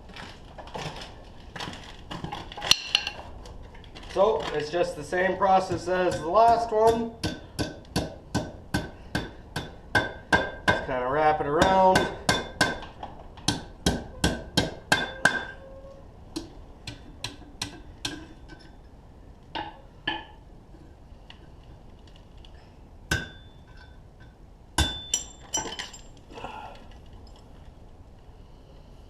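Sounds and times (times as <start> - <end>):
hammer striking steel on anvil: 5.7 - 10.9, 11.6 - 12.8, 13.5 - 15.6, 23.1 - 23.9, 24.8 - 25.4
metallic clinks: 24.9 - 26.3.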